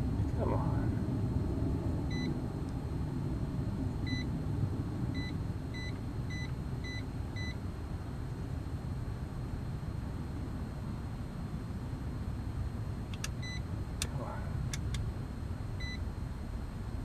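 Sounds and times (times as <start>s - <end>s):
steady low rumble: 0.0s - 17.0s
multimeter beeping: 13.4s - 13.6s.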